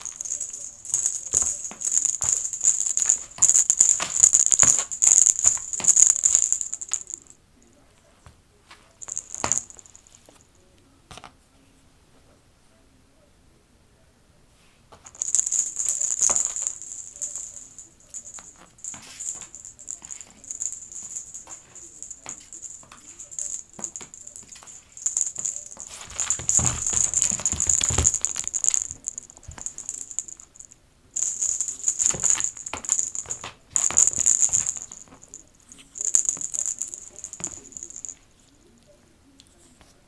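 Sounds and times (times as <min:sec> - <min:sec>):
small object rattling and jingling: 0:00.0 - 0:07.4, 0:09.0 - 0:10.4, 0:15.0 - 0:38.2.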